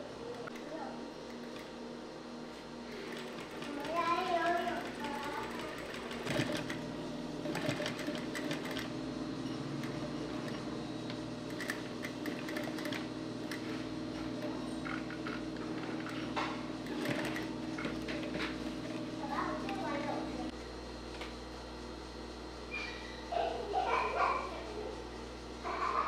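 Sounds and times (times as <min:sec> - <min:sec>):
sewing machine running: 0:02.8 - 0:09.0, 0:09.6 - 0:10.7, 0:11.5 - 0:18.7.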